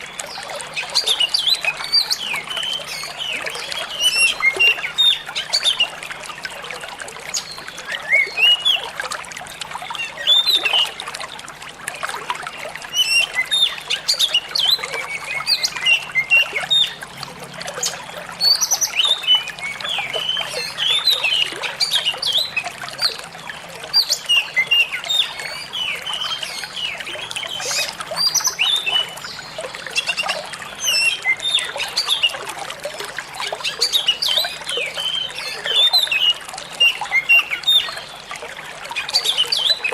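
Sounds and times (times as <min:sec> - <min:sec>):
running water trickling: 0:00.0 - 0:39.9.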